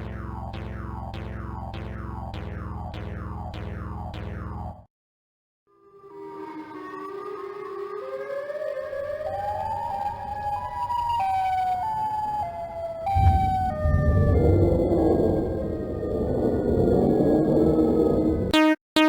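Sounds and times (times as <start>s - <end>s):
electronic music melody: 0.0s - 4.8s, 18.5s - 19.0s
loud noisy low layer: 13.1s - 18.5s.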